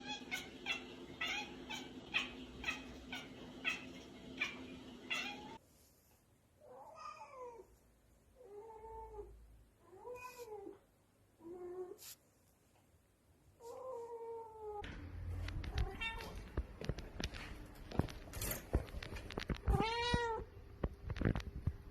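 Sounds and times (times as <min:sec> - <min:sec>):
cats meowing: 0:00.0 - 0:05.6, 0:15.7 - 0:16.4, 0:19.6 - 0:20.5
steady hum: 0:14.8 - 0:19.8.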